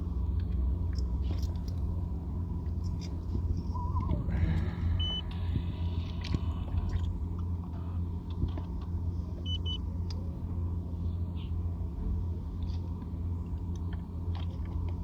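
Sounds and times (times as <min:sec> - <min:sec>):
low engine-like hum: 0:00.0 - 0:15.0
high electronic beeps: 0:03.7 - 0:04.2, 0:05.0 - 0:05.2.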